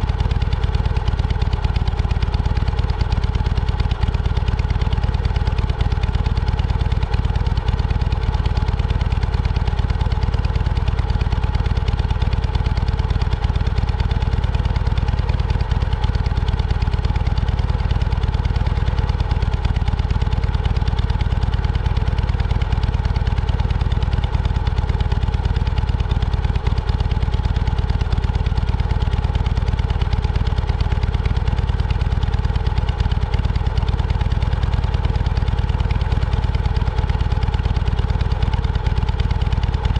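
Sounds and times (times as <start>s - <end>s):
vehicle engine running: 0.0s - 39.9s.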